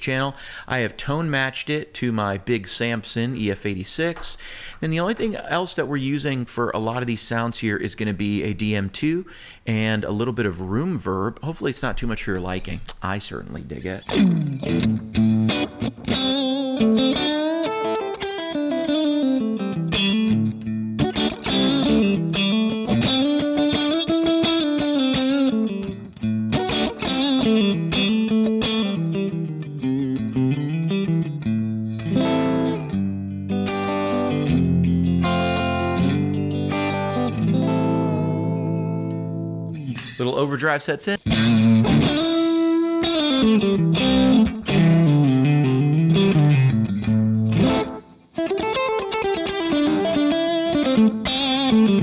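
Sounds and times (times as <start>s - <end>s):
clean electric guitar: 12.8s - 40.2s, 41.2s - 52.0s.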